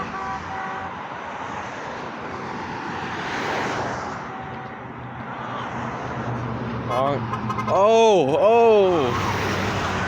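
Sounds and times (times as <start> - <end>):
vehicle passing by: 8.8 - 10.0.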